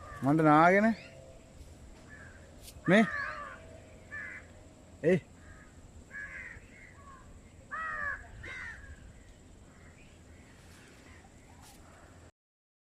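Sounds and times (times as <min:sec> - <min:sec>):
crows cawing: 0:00.0 - 0:00.4, 0:02.0 - 0:04.7, 0:05.4 - 0:09.0.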